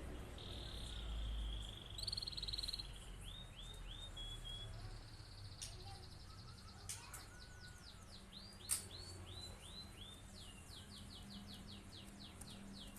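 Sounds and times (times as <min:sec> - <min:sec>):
canary singing: 0:00.3 - 0:12.9
sharp click: 0:08.6 - 0:09.0.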